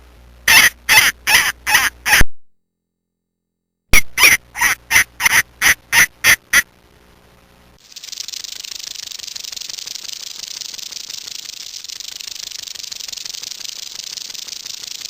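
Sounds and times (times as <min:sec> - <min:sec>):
animal rattling buzz: 0:07.8 - 0:15.0.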